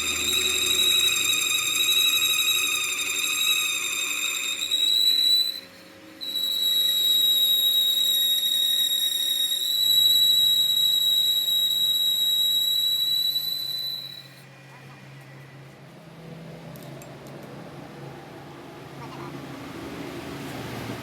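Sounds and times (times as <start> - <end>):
high-pitched whistling whine: 0.0 - 14.6.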